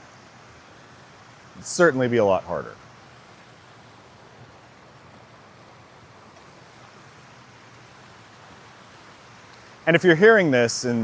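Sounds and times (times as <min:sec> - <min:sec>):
faint microphone hiss: 0:00.0 - 0:11.0.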